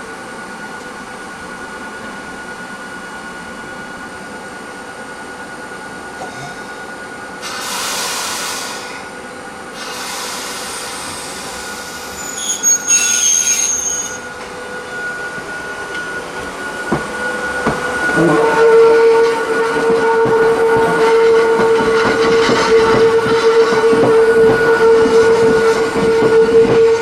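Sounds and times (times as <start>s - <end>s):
train wheels squealing: 9.8s - 27.0s.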